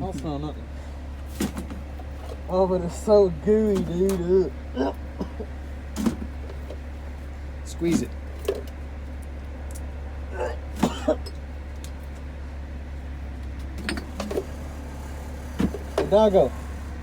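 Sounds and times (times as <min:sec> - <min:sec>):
vehicle engine idling: 0:00.0 - 0:17.0.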